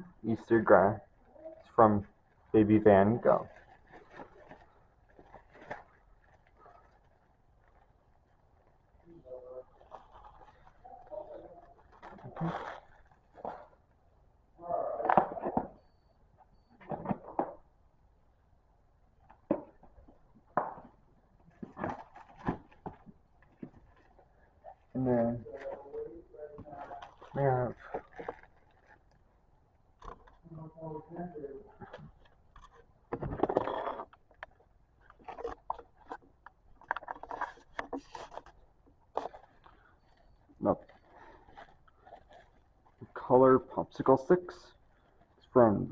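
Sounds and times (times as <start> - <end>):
toys being handled and set down: 21.6 - 24.0, 31.8 - 39.8.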